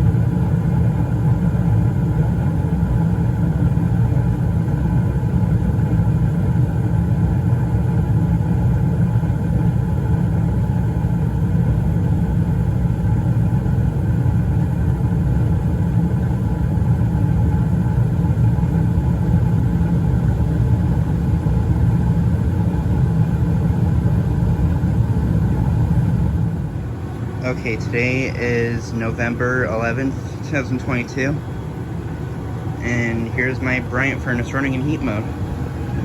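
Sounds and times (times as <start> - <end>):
gas furnace rumbling: 0.0 - 36.0.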